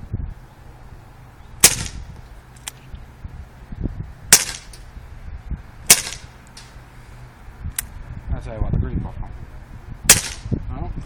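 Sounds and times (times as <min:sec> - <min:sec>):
air pistol shots: 0:01.6 - 0:02.1, 0:04.3 - 0:04.8, 0:05.9 - 0:06.4, 0:10.1 - 0:10.5.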